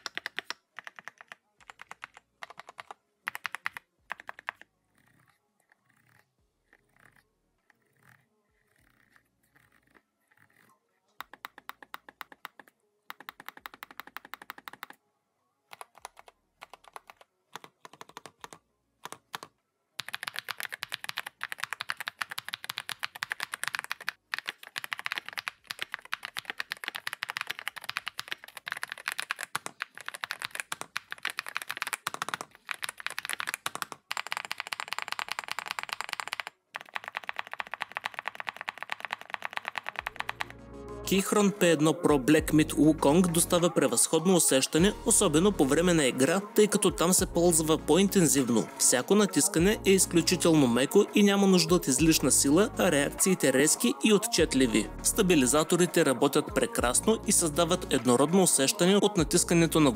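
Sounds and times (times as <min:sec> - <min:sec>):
mechanical keyboard typing: 0:00.0 - 0:06.2, 0:06.8 - 0:15.0, 0:15.7 - 0:40.6.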